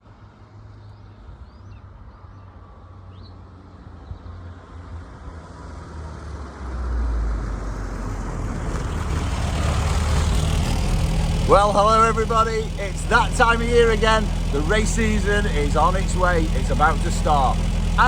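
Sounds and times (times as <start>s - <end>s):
car engine rumble: 6.6s - 18.0s.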